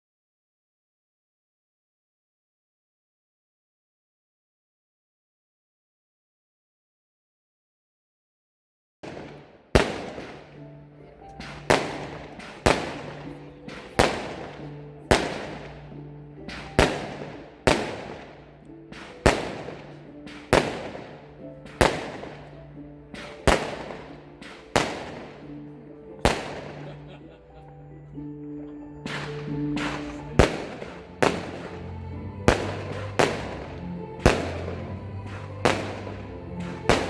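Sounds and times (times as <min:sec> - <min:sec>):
firework bangs: 0:09.0 - 0:37.0
background music: 0:09.1 - 0:37.0.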